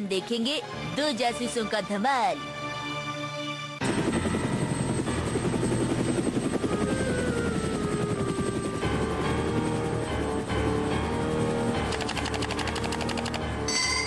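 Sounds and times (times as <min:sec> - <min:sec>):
fast chopping sound: 0:11.9 - 0:13.4
cartoon music: 0:13.7 - 0:14.0
tone gliding down: 0:13.7 - 0:14.0.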